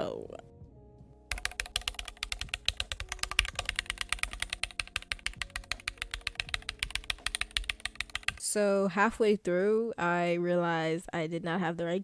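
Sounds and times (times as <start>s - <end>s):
mechanical keyboard clicks: 1.3s - 8.4s.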